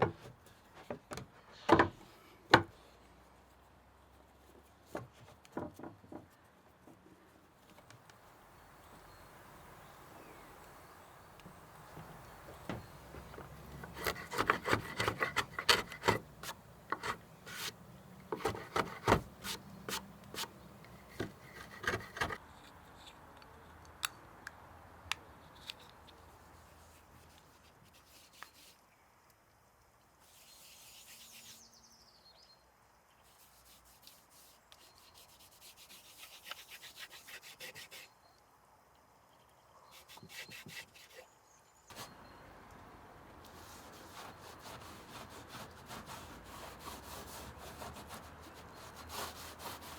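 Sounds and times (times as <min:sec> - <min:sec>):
hand tool strokes on wood: 0:12.7 - 0:22.4.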